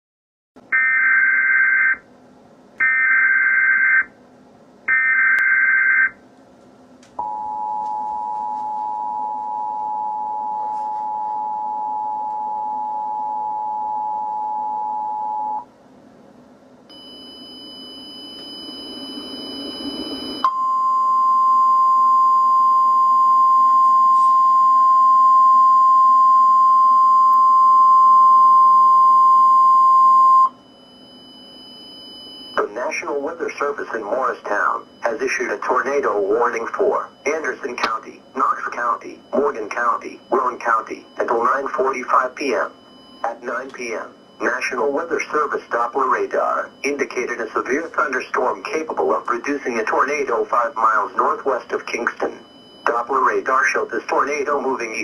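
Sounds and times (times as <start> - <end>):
steady single-pitch warning tone: 0.6 - 2.1, 2.8 - 4.2, 4.8 - 6.2, 7.2 - 15.8, 16.6 - 55.0
hiss with high whines: 16.9 - 20.5
data burst tones: 16.9 - 20.6, 31.4 - 55.0
two-tone attention signal: 16.9 - 32.7.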